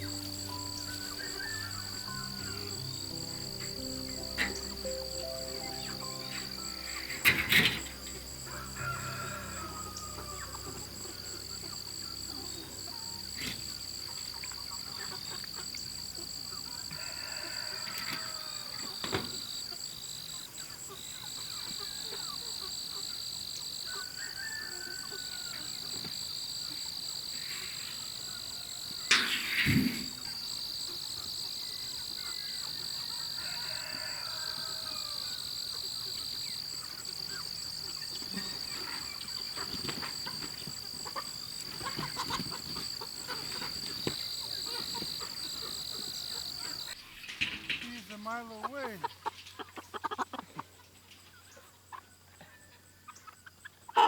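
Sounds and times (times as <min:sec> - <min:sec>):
fowl calling: 0:00.0 - 0:19.1, 0:33.0 - 0:35.6
high-pitched insect chorus: 0:00.0 - 0:49.8.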